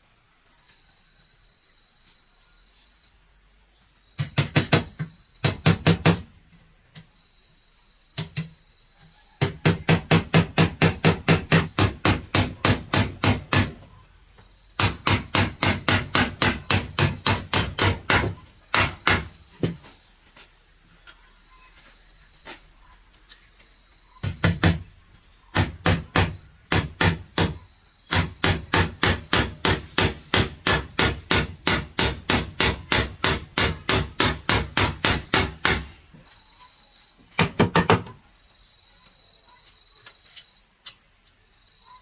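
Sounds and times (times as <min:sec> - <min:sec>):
insects chirring: 0:00.0 - 0:42.0
rapid hammer blows on wood: 0:04.2 - 0:06.3, 0:09.4 - 0:13.8, 0:14.8 - 0:19.8, 0:24.2 - 0:24.9, 0:25.5 - 0:36.0.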